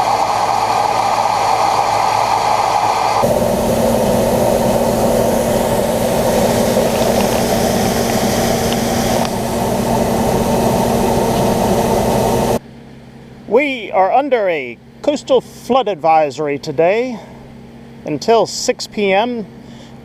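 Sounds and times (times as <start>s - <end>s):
combine harvester running: 0.0s - 12.6s.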